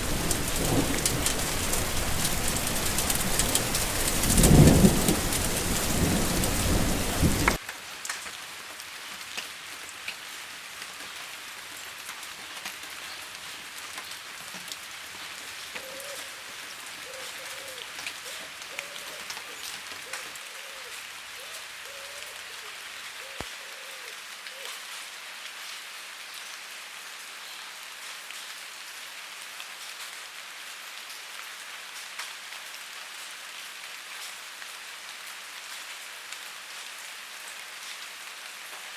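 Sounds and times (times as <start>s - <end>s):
rain on a gutter: 0.0s - 38.9s.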